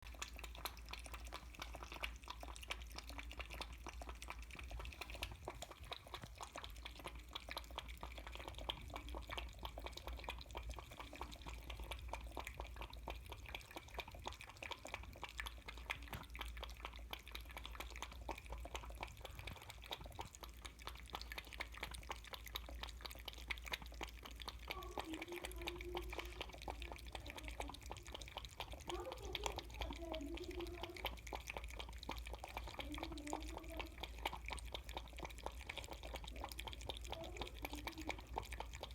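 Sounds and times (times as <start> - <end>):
kitten lapping milk: 0.0 - 38.9.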